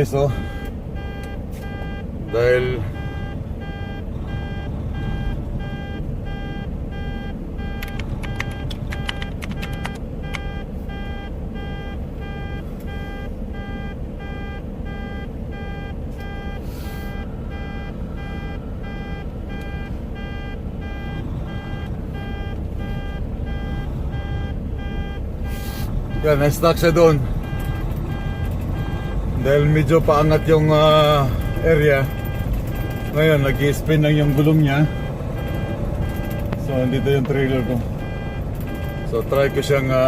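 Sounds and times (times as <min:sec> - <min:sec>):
diesel truck engine rumble: 0:00.0 - 0:40.0
truck back-up alarm beeping: 0:00.0 - 0:40.0
sharp clicks: 0:07.8 - 0:10.5.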